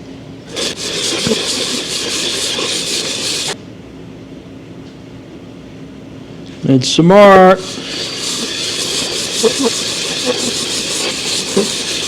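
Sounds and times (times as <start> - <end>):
metal scraping on sandpaper: 0.5 - 3.6, 7.6 - 12.0.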